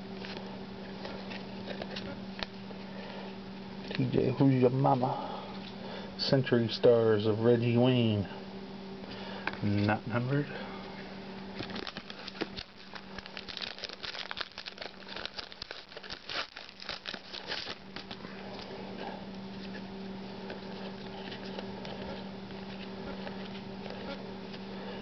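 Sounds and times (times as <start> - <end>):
steady low hum: 0.0 - 25.0
plastic wrapper crinkling: 11.6 - 19.8.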